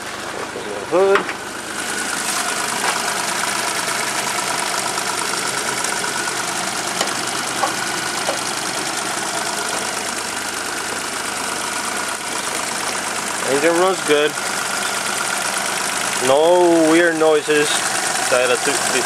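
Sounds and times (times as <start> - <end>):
car engine idling: 0.0 - 19.0.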